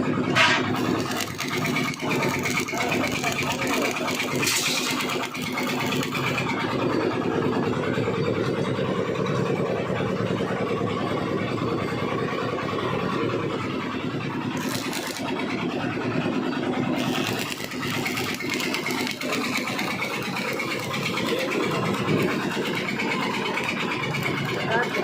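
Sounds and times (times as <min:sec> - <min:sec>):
welding arc crackling and hissing: 0:00.5 - 0:06.4, 0:14.6 - 0:15.4, 0:17.0 - 0:25.0.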